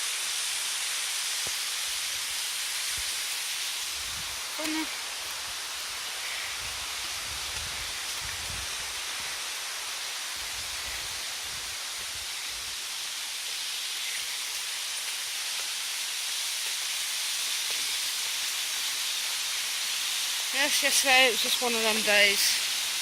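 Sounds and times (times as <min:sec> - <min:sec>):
rushing water hiss: 0:00.0 - 0:23.0
wind rumble on microphone: 0:03.9 - 0:04.5, 0:06.5 - 0:09.4, 0:10.4 - 0:12.7.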